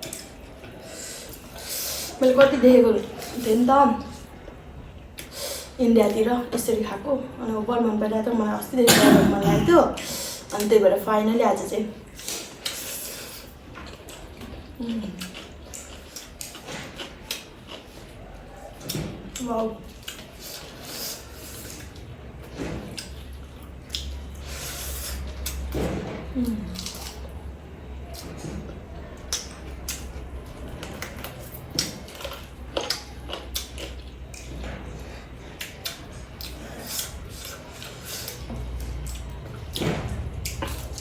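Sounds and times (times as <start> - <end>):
close eating sounds: 0.0 - 41.0
wet chewing and mouth smacks: 13.4 - 19.0, 19.8 - 22.0, 22.9 - 24.5, 29.2 - 39.8.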